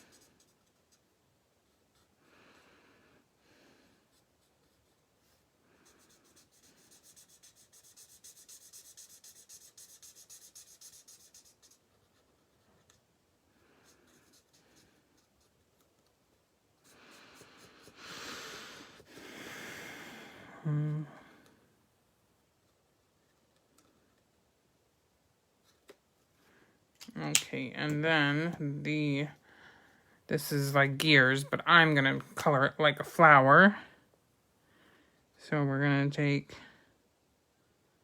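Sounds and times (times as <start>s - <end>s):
marker rubbing on cardstock: 0.0s - 1.0s, 5.8s - 13.0s, 13.8s - 15.9s, 16.8s - 18.0s.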